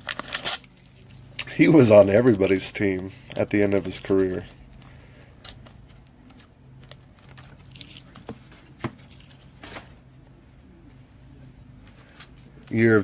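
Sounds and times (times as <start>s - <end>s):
plastic packaging crinkling: 0.0s - 2.6s, 3.2s - 9.8s
faint steady hum: 0.0s - 13.0s.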